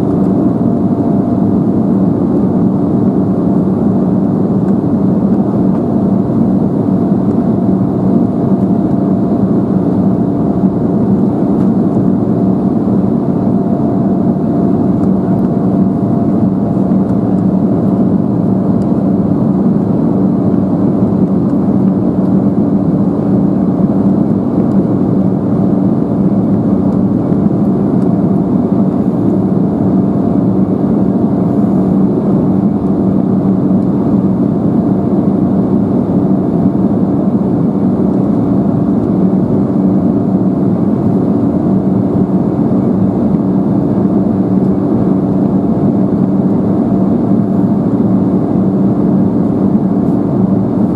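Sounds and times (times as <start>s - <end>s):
jet engines droning: 0.0s - 50.9s.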